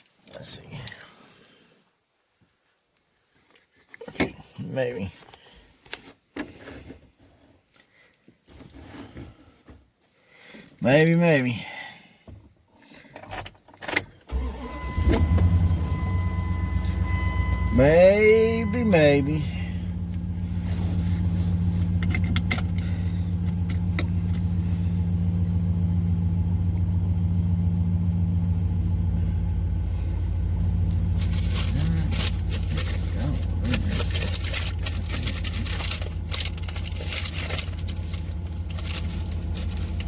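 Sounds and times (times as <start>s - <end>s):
car engine and road drone: 14.3s - 40.0s.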